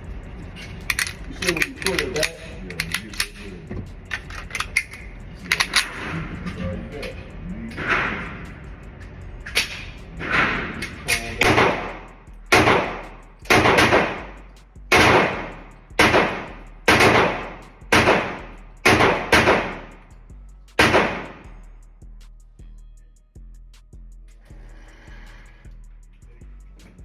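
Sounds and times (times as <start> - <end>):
gunshots with echo: 10.2 - 14.3, 14.9 - 19.9, 20.8 - 21.4.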